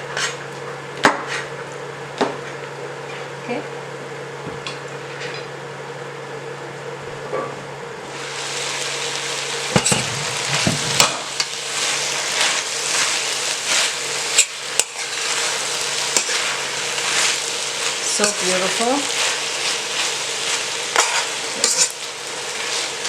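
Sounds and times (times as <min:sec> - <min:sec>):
food sizzling in a pan: 0:08.0 - 0:23.0
spatula scraping a pan: 0:09.7 - 0:23.0.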